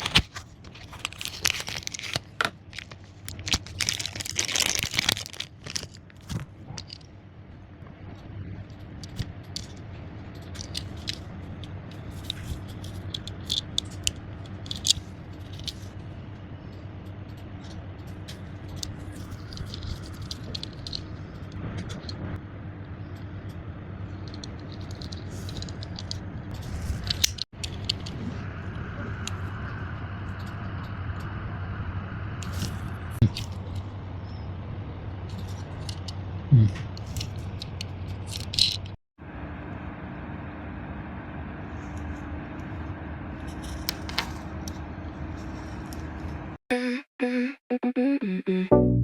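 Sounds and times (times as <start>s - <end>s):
hands handling toy packaging: 0.0s - 7.0s
steady low hum: 0.0s - 47.4s.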